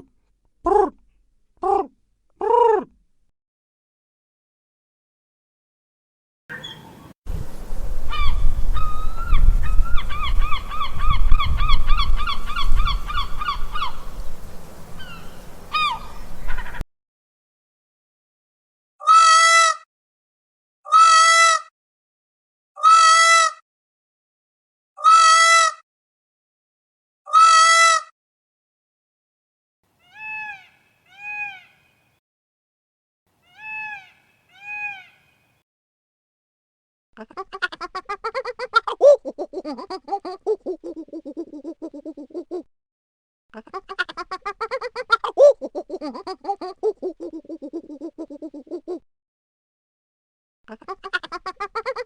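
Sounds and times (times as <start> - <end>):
goose honking: 15.0 - 16.8.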